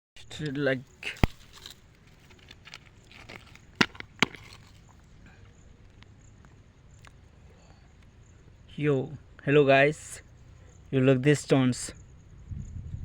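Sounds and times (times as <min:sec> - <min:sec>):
sharp knocks: 0:03.8 - 0:04.6.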